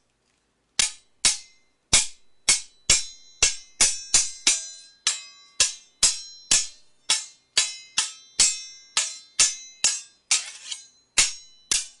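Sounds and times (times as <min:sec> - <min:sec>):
sword blades clashing: 0:00.8 - 0:12.0
blades grinding scrape: 0:10.3 - 0:10.9.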